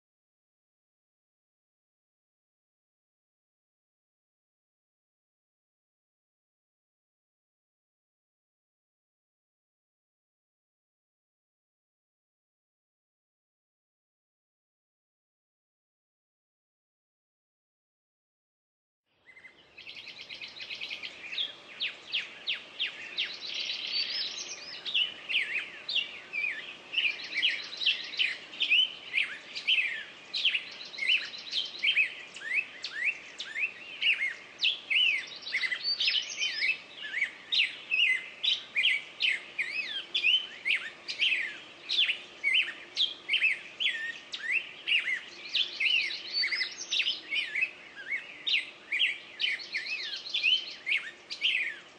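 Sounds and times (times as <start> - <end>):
birds singing and chirping: 19.2 - 51.9.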